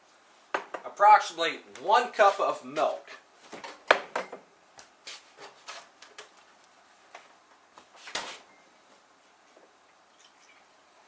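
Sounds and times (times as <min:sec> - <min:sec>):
kitchenware clicking and knocking: 0:03.7 - 0:04.4.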